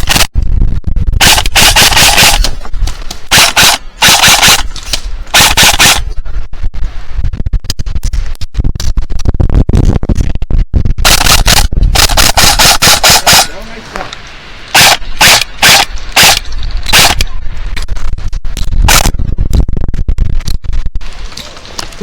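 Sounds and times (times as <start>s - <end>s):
airsoft rifle shots: 0.0s - 0.3s, 1.2s - 2.6s, 3.3s - 4.7s, 5.3s - 6.1s, 11.0s - 13.8s, 14.7s - 17.3s, 18.9s - 19.2s.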